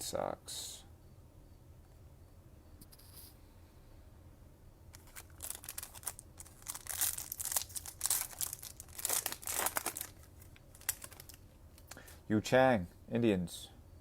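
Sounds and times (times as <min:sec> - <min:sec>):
foil wrapper tearing and crinkling: 0:05.0 - 0:12.1.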